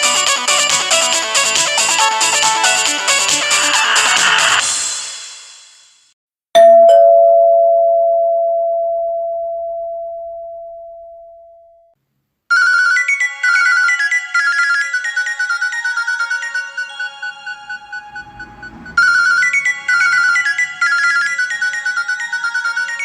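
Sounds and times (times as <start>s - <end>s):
synth ringtone melody: 12.6s - 23.0s.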